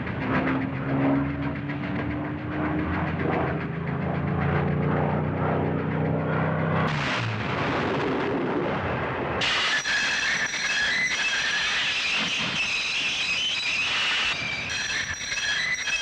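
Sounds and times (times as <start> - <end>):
broad rushing noise: 0.0 - 12.4
propeller engines droning: 0.0 - 16.0.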